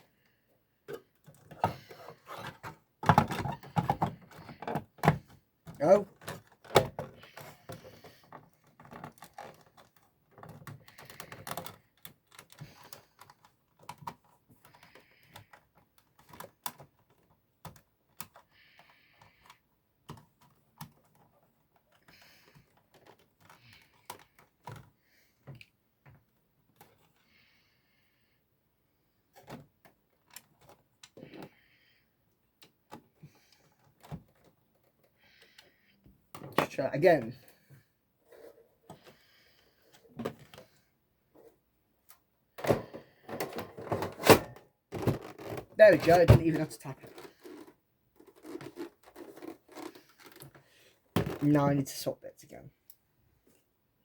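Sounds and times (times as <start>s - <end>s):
scraping rustles: 44.9s - 51.6s.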